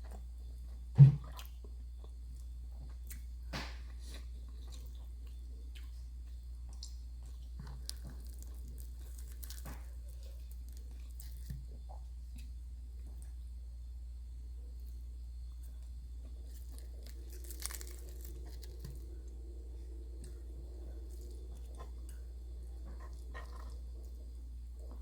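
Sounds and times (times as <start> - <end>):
steady low hum: 0.0 - 25.0
chewing and biting food: 4.0 - 13.3, 15.6 - 19.4, 20.0 - 25.0.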